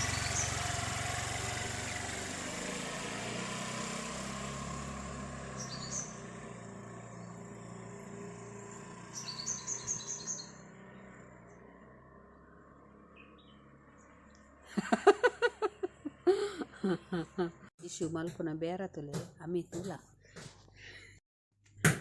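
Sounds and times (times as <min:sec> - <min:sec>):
birds chirping: 0:00.0 - 0:00.8, 0:05.5 - 0:06.3, 0:06.9 - 0:07.7, 0:08.5 - 0:17.4
motor scooter engine: 0:00.0 - 0:17.7.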